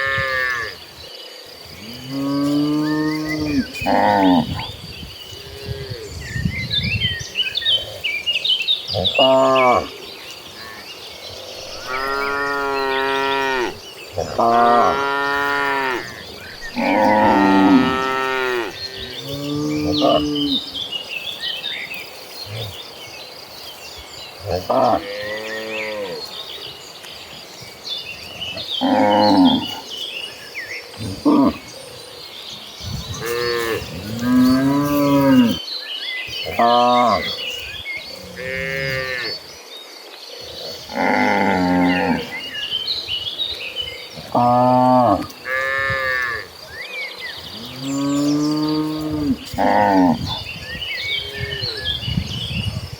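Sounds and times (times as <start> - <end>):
cattle mooing: 11.6 - 20.6.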